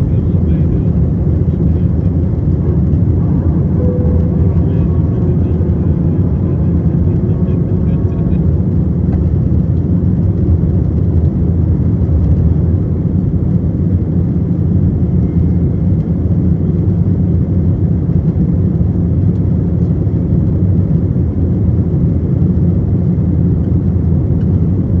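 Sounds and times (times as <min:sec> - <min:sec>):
jet engines roaring: 0:00.0 - 0:15.1.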